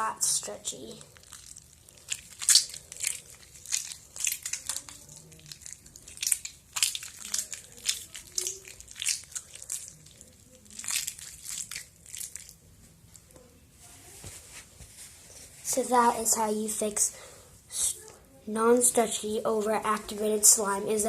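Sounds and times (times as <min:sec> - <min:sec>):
slime crackling and popping: 0:00.2 - 0:12.6.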